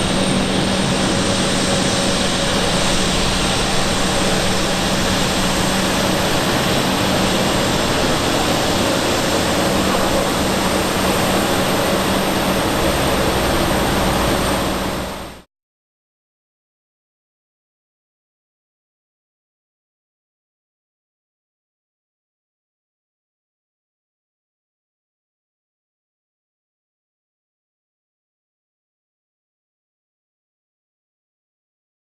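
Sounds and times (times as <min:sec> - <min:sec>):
jet engines humming: 0:00.0 - 0:15.5.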